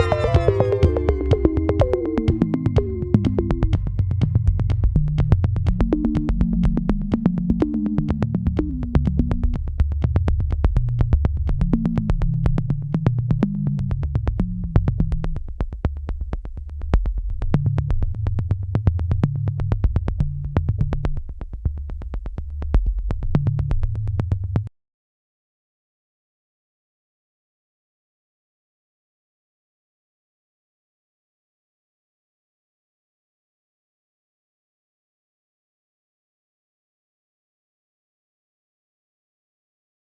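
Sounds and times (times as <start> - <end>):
electronic music with synth bass: 0.0 - 9.5.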